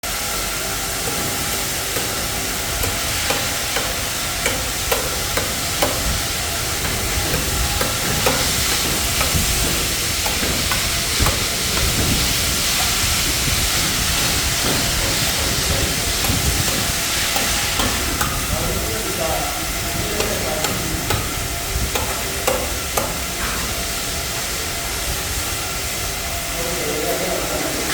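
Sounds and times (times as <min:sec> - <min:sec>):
steady noisy hiss: 0:00.0 - 0:27.9
tools scraping wet concrete: 0:01.1 - 0:23.7
sharp knocks: 0:06.8 - 0:12.9, 0:13.7 - 0:18.4.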